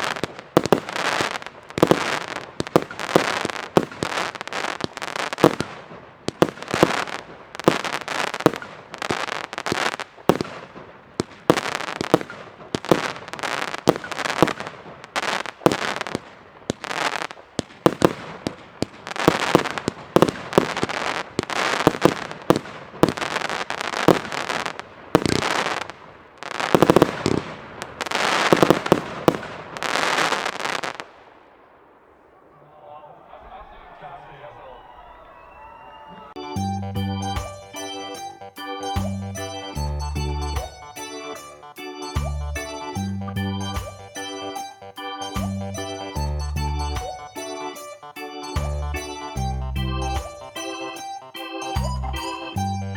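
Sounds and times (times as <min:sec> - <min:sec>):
firework cake shots and bursts: 0:00.0 - 0:31.2.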